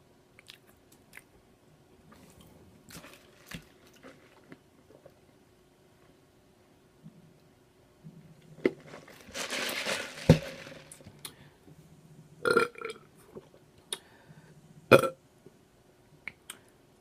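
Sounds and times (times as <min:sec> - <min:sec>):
woman burping loudly: 0:12.4 - 0:13.1, 0:14.9 - 0:15.2.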